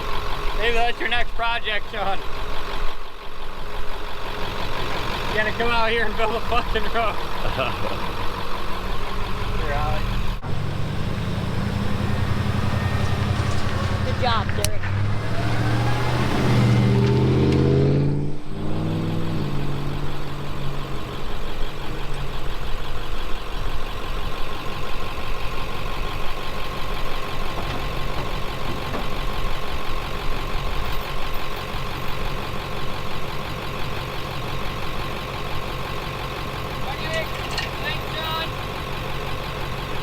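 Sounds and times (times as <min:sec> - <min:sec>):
vehicle engine idling: 0:00.0 - 0:40.0.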